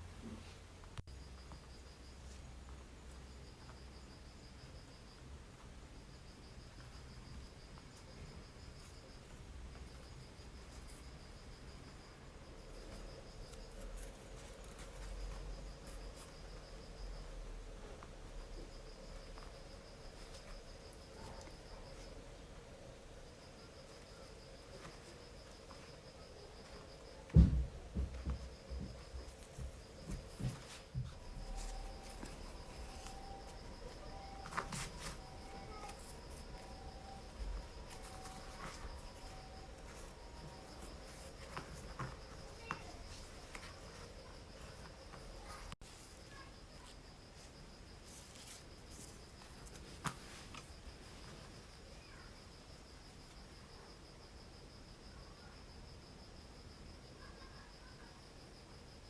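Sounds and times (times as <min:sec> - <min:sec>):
insects chirring: 0:01.0 - 0:59.0
low thud: 0:27.3 - 0:29.0
soft knocks: 0:27.3 - 0:29.1.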